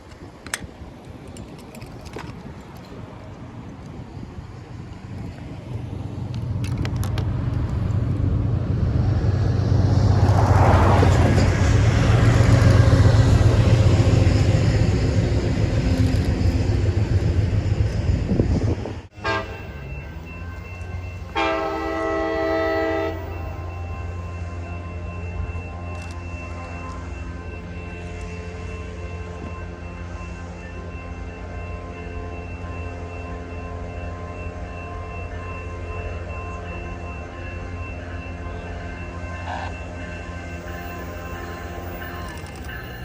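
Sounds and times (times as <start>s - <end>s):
diesel locomotive engine rumble: 0.0s - 43.0s
multi-tone train air horn: 19.2s - 19.8s, 21.3s - 23.8s.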